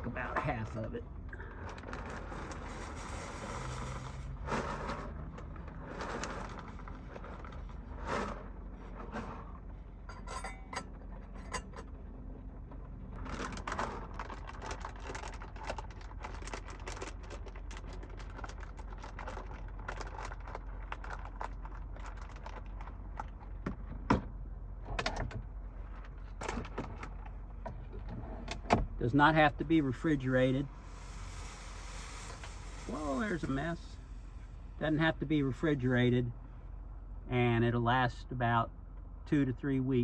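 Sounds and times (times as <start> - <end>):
steady low hum: 0.0 - 14.9, 15.7 - 40.0
cookware clinks and scrapes: 10.1 - 11.9
food packet crinkling: 13.3 - 23.0.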